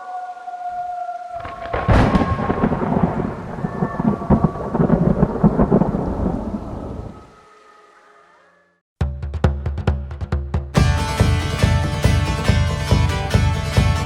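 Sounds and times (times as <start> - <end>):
rain: 0.0 - 7.6
thunder rumbling and cracking: 1.4 - 7.3.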